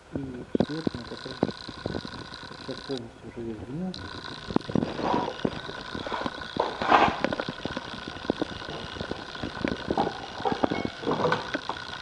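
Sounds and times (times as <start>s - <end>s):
loud scraping noises: 4.0s - 12.0s.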